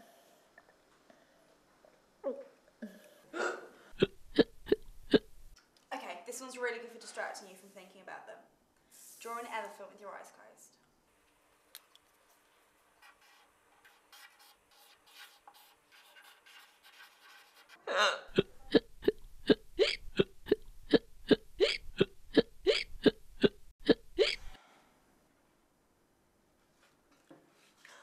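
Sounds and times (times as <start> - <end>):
person hiccuping: 2.2 - 5.3, 17.9 - 24.5
faint scratching: 12.2 - 17.8.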